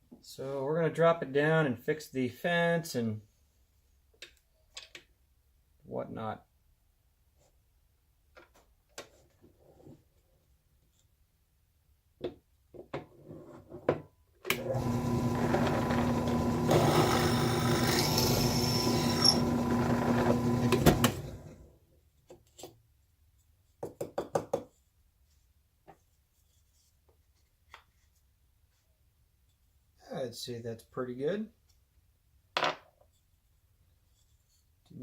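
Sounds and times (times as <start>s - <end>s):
electric drill boring into wood: 14.5s - 21.6s.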